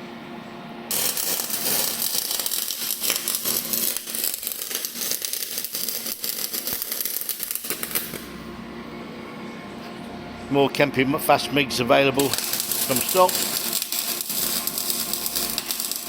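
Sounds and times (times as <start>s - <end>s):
welding arc crackling hiss: 0.9s - 8.4s, 12.2s - 16.0s.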